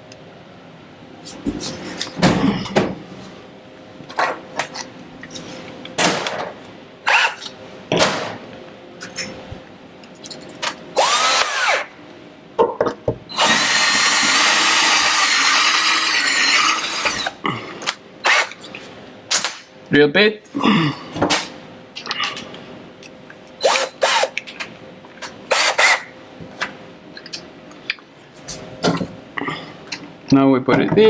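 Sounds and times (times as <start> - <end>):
power drill drilling into wall: 11.0 - 11.9, 13.3 - 17.3.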